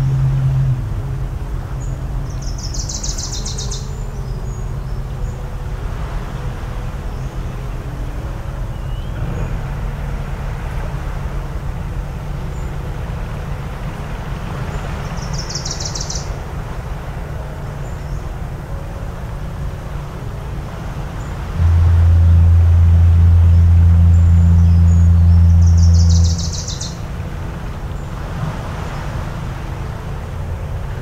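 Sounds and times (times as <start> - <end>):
distant motor drone: 0.0 - 31.0
waves washing on shore: 4.0 - 31.0
bird trilling: 21.9 - 27.0.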